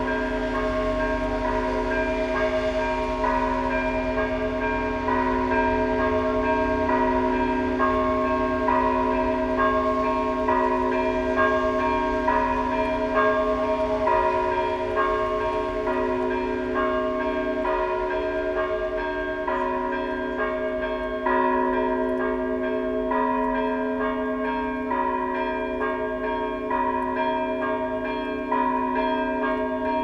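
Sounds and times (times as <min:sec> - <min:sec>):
church bells pealing: 0:00.0 - 0:30.0.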